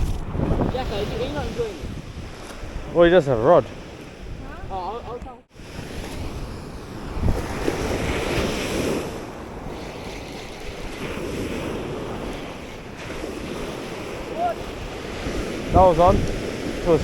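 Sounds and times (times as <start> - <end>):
ocean surf washing onto beach: 0.0 - 17.0
wind buffeting microphone: 0.0 - 17.0.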